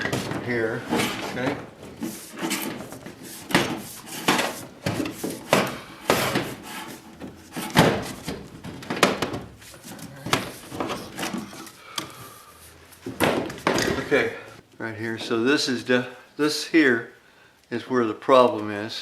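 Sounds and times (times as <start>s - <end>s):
cable knocking and scraping on wood: 0.0s - 9.5s.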